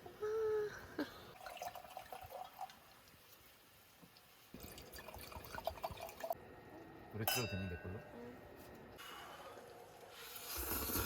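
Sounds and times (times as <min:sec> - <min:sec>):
person humming: 0:00.0 - 0:00.8.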